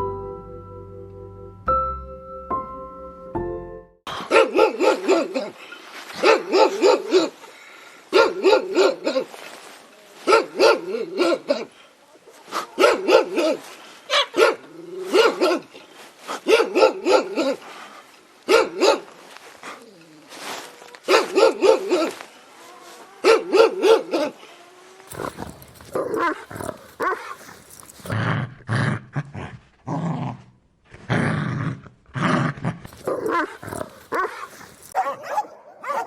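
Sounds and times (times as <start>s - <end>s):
dog barking angrily: 4.2s - 5.4s, 6.2s - 7.4s, 8.1s - 9.3s, 10.3s - 11.7s, 12.8s - 15.7s, 16.4s - 17.6s, 18.5s - 19.1s, 21.1s - 22.2s, 23.2s - 24.4s, 25.1s - 28.2s, 32.9s - 36.0s.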